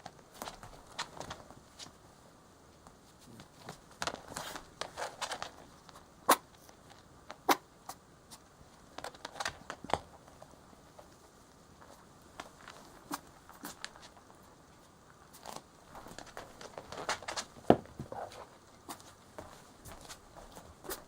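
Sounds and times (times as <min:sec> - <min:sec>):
rabbit feet scuffling and tapping: 0:00.0 - 0:02.1, 0:02.7 - 0:21.0.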